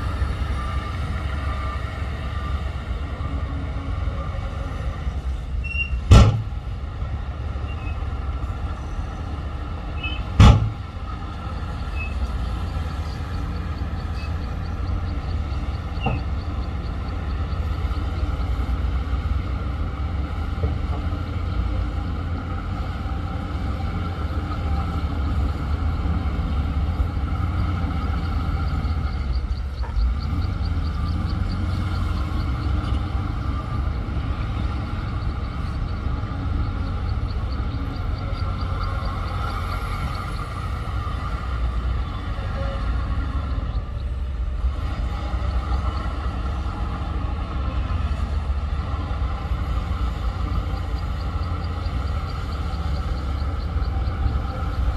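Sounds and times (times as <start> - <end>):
diesel machinery engine rumble: 0.0 - 54.9
loud metallic bangs: 6.0 - 6.6, 10.3 - 10.8.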